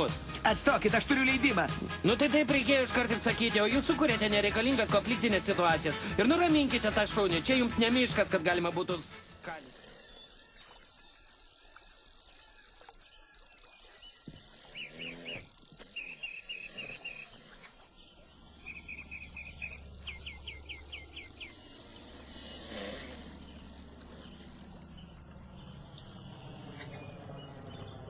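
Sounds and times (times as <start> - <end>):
small bird singing chirps: 9.8 - 22.3
faint low hum: 18.0 - 28.0.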